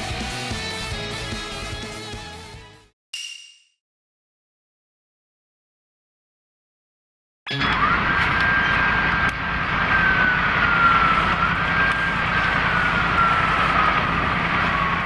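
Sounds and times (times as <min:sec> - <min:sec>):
police siren wailing: 0:07.5 - 0:15.0
steady rushing noise: 0:08.0 - 0:15.0.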